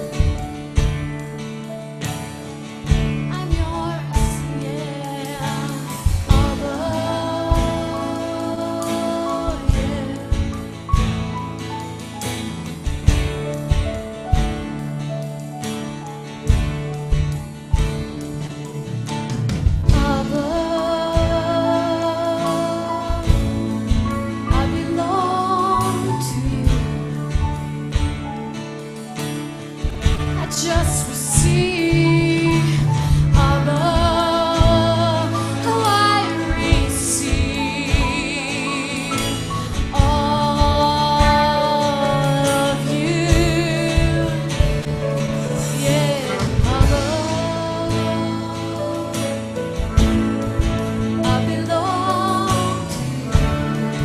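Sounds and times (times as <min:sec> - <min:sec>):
bass: 0:00.0 - 0:54.0
worship band playing slow song: 0:00.0 - 0:54.0
steady drum beat: 0:02.2 - 0:15.0, 0:16.5 - 0:21.6, 0:29.9 - 0:54.0.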